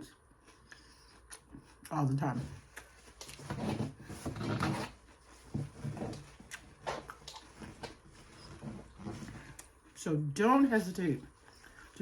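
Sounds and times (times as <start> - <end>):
chewing with mouth clicks: 0.0 - 2.0, 2.6 - 3.4, 6.3 - 7.7.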